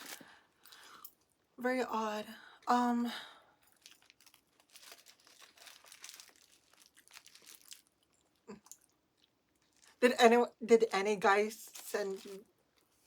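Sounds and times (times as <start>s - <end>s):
paper packaging crinkling: 0.0s - 0.9s, 3.7s - 8.3s, 11.6s - 12.9s.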